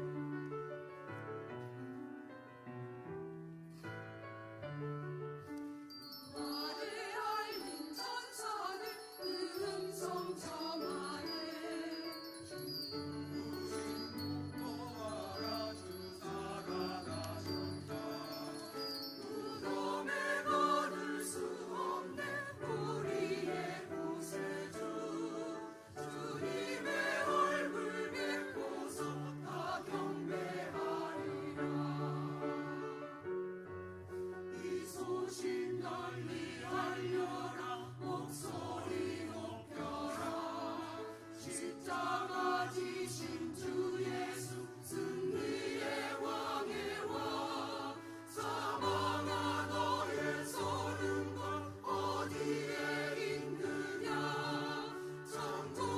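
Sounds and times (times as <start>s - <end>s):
choir singing: 6.3s - 33.4s, 34.3s - 55.9s.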